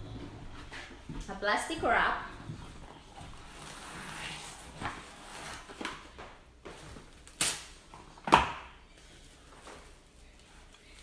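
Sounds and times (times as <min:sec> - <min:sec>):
cling wrap crinkling: 0:08.9 - 0:11.0.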